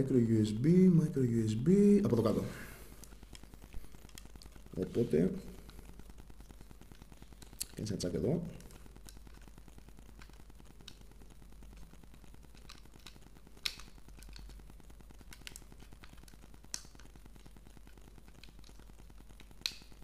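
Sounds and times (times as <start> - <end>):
low steady hum: 0.0 - 20.0
plastic clicks: 12.5 - 14.6.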